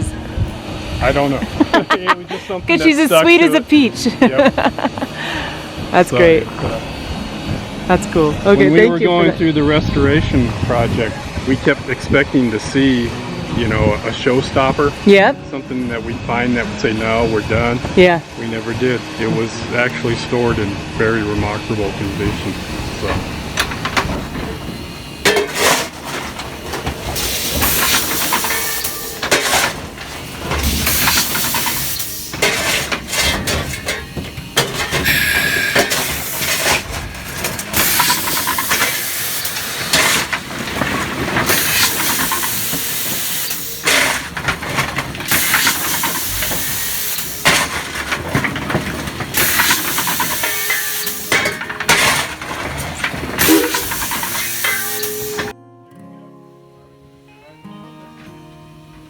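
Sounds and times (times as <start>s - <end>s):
steam locomotive hissing: 9.4s - 55.5s.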